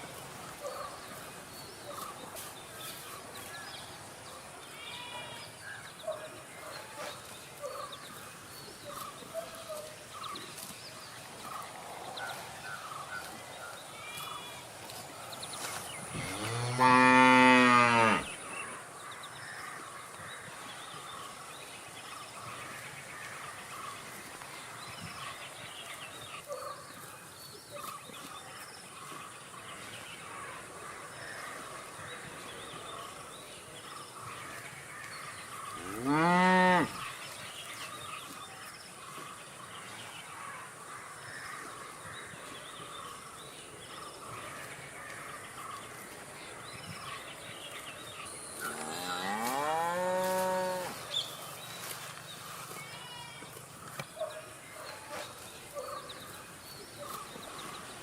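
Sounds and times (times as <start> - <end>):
faint background noise: 0.0 - 58.0
cow mooing: 16.2 - 18.3, 35.8 - 37.0, 48.6 - 51.0.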